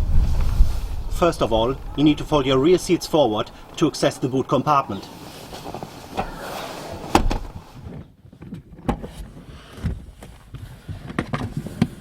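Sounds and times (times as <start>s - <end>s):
rustle: 0.0s - 8.0s
knocks and thud of folding seat: 5.4s - 10.0s.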